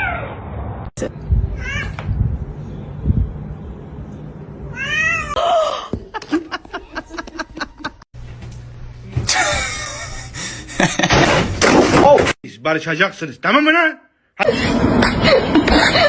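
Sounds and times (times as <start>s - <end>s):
cat yowling: 0.0s - 0.4s
cat meowing: 1.5s - 2.1s, 4.7s - 5.4s.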